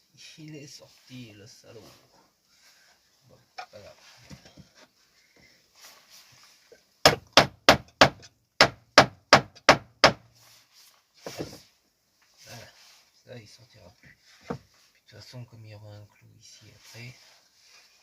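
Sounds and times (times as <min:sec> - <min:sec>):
hammer striking a nail into wood: 0:07.0 - 0:10.2.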